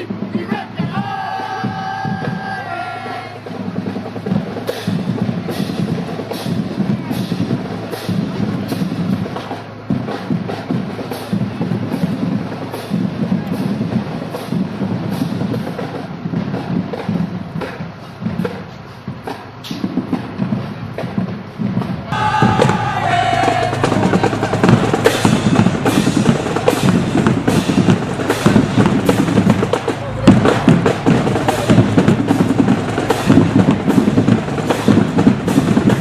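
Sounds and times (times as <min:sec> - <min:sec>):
snare drum strokes: 0:00.0 - 0:36.0
held pitched note: 0:22.1 - 0:33.4
booming bass drum hits: 0:22.1 - 0:36.0.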